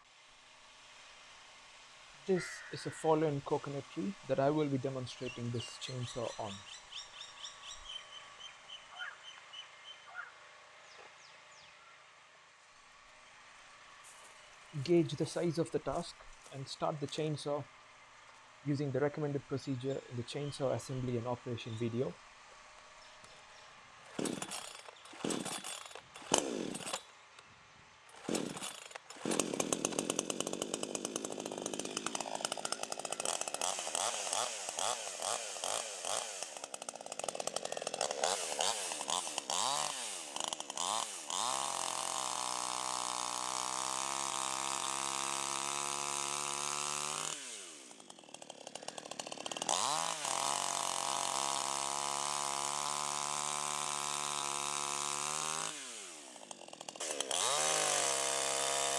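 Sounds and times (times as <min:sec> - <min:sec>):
chainsaw engine revving: 0:02.4 - 0:06.6, 0:14.5 - 0:27.4, 0:28.1 - 0:58.9
chainsaw pull-start bursts: 0:02.6 - 0:06.6, 0:14.2 - 0:58.9.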